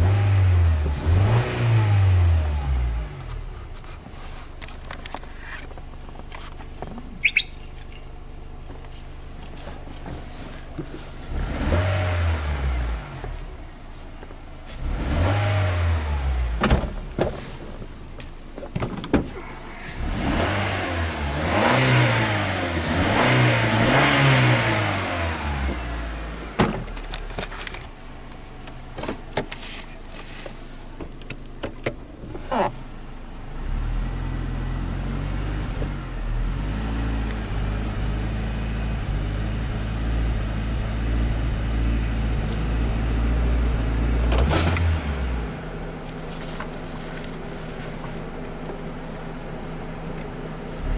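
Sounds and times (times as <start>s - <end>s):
car engine revving: 0.0s - 3.6s, 11.2s - 13.7s, 14.6s - 17.2s, 19.3s - 27.8s, 33.5s - 48.2s.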